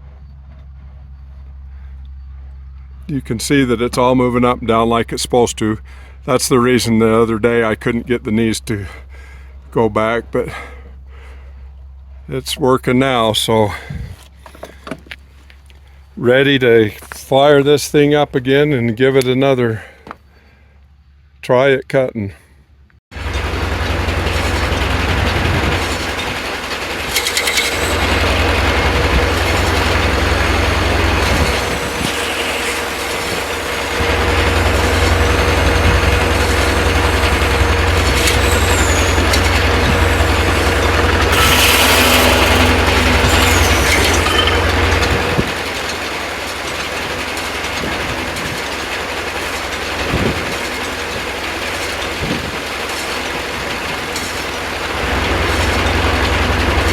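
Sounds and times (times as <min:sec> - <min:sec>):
sawmill engine hum: 0:00.0 - 0:21.4, 0:23.2 - 0:56.9
pulleys and gears turning: 0:23.2 - 0:56.9.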